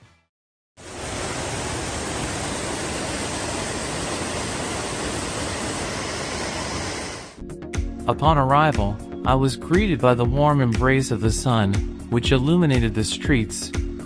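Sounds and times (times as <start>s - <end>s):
waterfall rushing: 0.8s - 7.4s.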